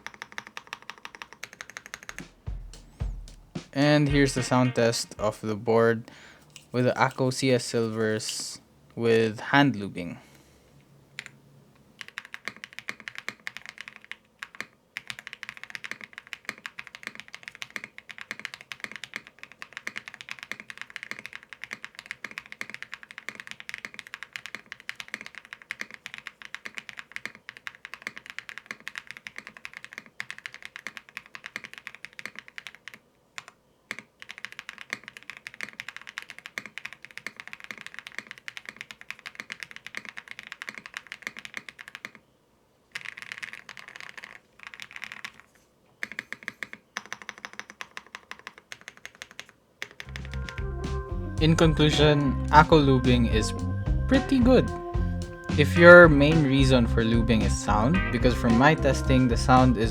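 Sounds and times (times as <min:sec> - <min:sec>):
fast typing on mechanical keyboard: 0:00.0 - 0:02.4, 0:12.0 - 0:42.3, 0:42.9 - 0:50.6.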